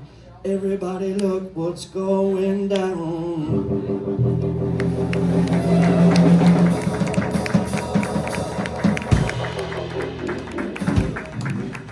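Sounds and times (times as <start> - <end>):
heavy bass drum hit: 3.5 - 11.8
rock band playing: 3.5 - 11.9.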